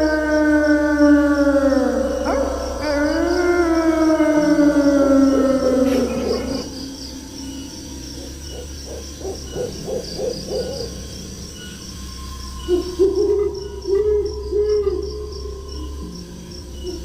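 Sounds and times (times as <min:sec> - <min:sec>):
wolf howl: 0:00.0 - 0:11.4, 0:12.1 - 0:17.0
crickets chirring: 0:00.0 - 0:17.0
owl hooting: 0:08.0 - 0:11.4, 0:12.6 - 0:16.0.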